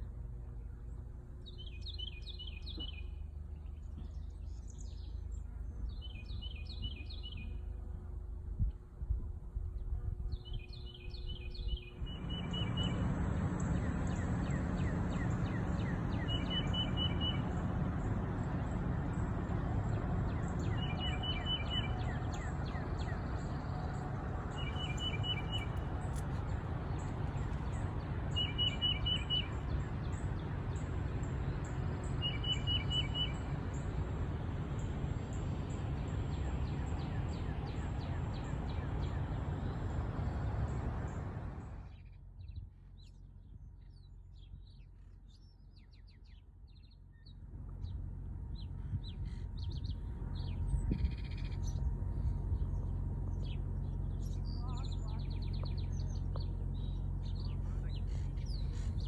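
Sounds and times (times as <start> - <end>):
bird chirping: 1.4 - 7.6, 10.3 - 41.2, 42.0 - 59.0
high ticking bird calls: 10.8 - 40.2, 52.5 - 59.0.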